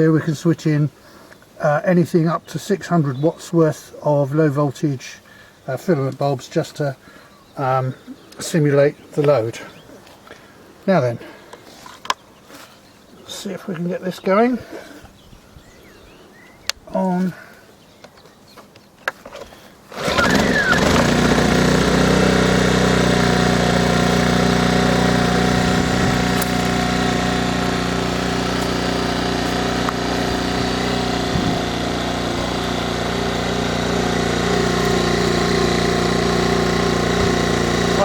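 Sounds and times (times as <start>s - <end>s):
generator engine starting and running: 19.9s - 38.0s.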